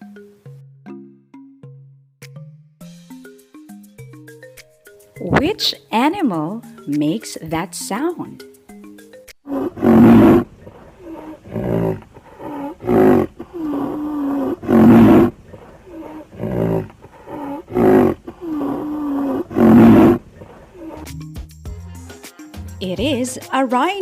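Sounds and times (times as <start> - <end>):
rhinoceros calling: 9.5 - 21.2.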